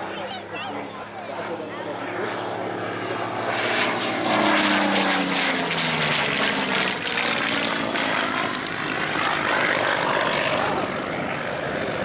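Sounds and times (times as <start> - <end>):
propeller plane flyby: 0.0 - 12.0.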